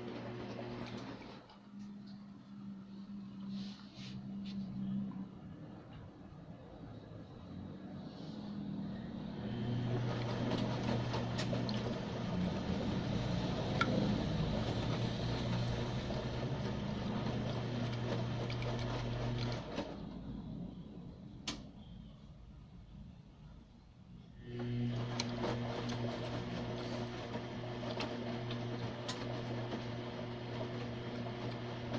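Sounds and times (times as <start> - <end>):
washing machine motor humming: 0.0 - 3.5, 4.3 - 22.1, 24.3 - 31.9
water sloshing: 9.8 - 19.7.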